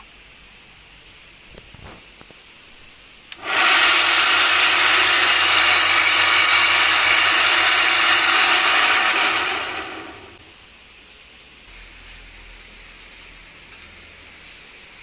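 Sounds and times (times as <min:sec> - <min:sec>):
electric grater motor running: 0:03.4 - 0:10.4.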